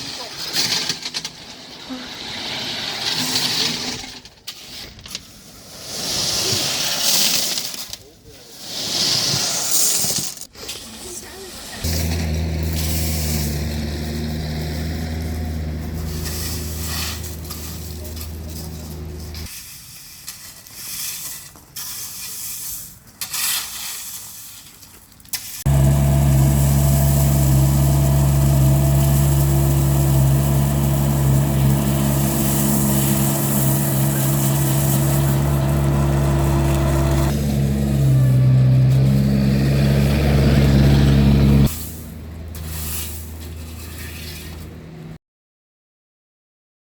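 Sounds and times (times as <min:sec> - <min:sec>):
skid steer engine running: 0:11.8 - 0:19.5, 0:25.7 - 0:42.5.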